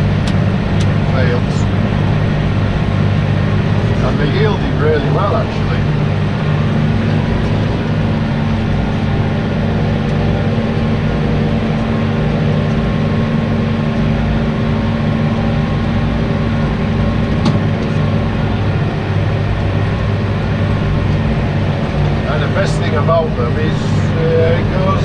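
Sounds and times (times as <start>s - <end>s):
tractor engine droning: 0.0s - 25.0s.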